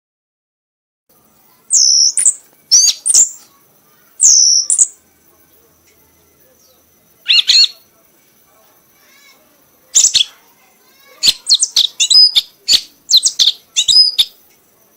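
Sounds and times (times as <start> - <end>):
songbird whistling: 1.5 - 5.0, 6.6 - 7.9, 9.9 - 10.4, 11.0 - 14.4.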